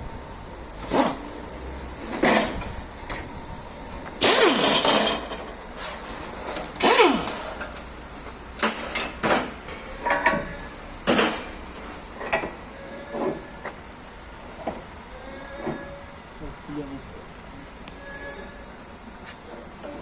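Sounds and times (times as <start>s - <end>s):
knocks and clanks: 2.0s - 3.3s, 4.0s - 5.6s, 8.6s - 11.6s.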